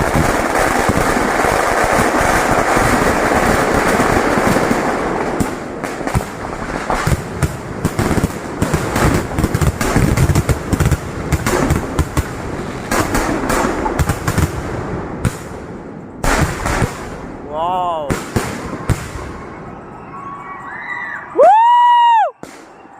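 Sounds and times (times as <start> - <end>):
continuous crackle: 0.0 - 13.5
firecrackers banging: 0.0 - 19.8, 21.4 - 22.9.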